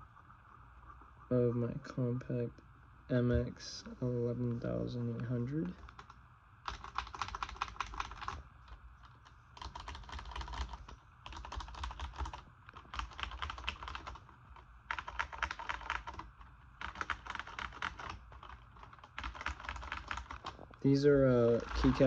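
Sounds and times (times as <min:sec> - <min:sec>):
mechanical keyboard typing: 0:05.8 - 0:08.4, 0:09.0 - 0:20.8, 0:21.4 - 0:22.0.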